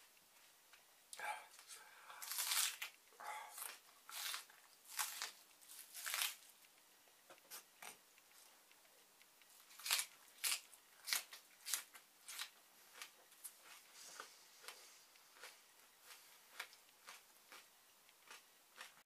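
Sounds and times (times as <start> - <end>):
onion being chewed: 1.5 - 6.8, 7.4 - 19.0.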